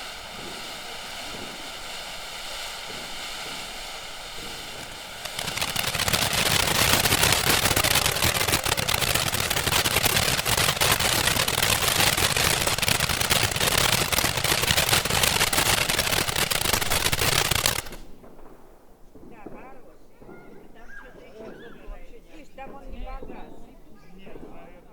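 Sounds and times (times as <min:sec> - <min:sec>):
firework fountain hissing and crackling: 0:00.0 - 0:19.6.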